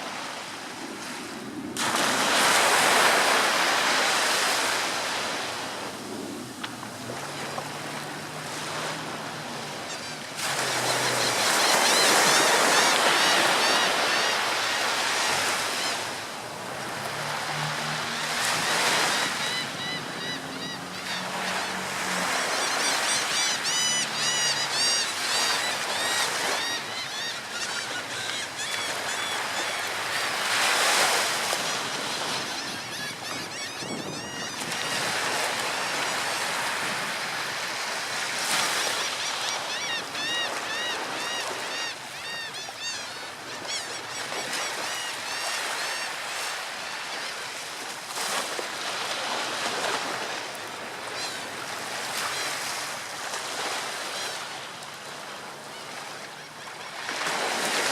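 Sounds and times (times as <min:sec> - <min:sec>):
ocean surf washing on shore: 0:00.0 - 0:27.2, 0:28.0 - 0:42.4
birds calling: 0:07.9 - 0:16.2, 0:17.3 - 0:47.5.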